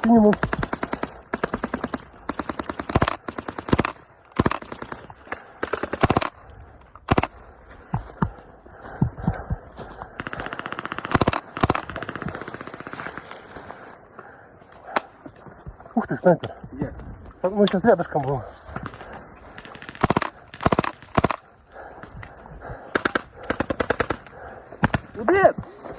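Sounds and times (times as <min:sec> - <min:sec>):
replica guns firing bursts: 0:00.0 - 0:07.6, 0:10.1 - 0:13.8, 0:18.7 - 0:21.9, 0:22.7 - 0:25.4.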